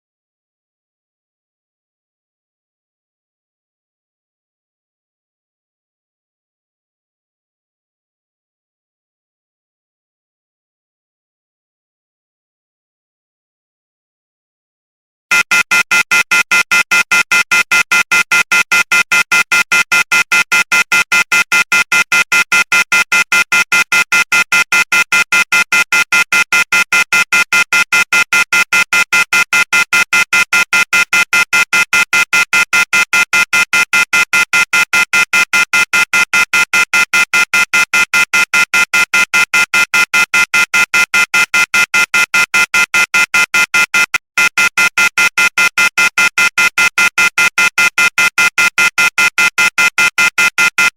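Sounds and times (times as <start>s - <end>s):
buzzy phone ringing tone: 15.3s - 50.9s.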